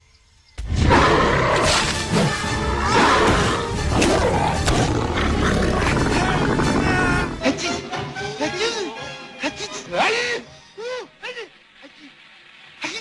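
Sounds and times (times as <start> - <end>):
cartoon soundtrack music: 0.8 - 11.4
creature roar sound effect: 2.7 - 7.4.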